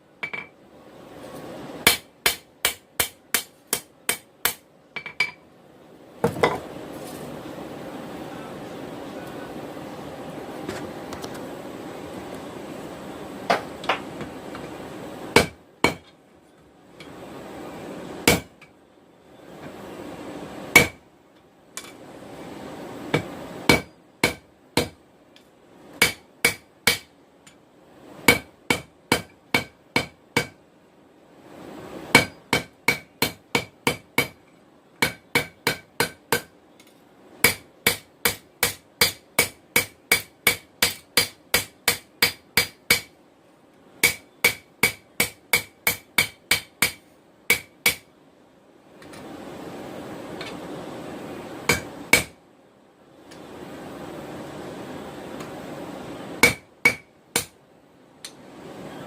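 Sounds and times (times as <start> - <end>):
hammer ringing on hot steel: 56.4 - 57.5.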